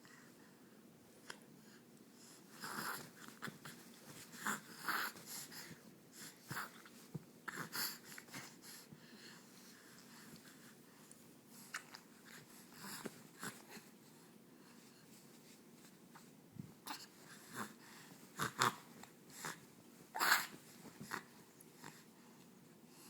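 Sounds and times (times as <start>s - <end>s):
baby vocal sounds: 20.2s - 21.2s.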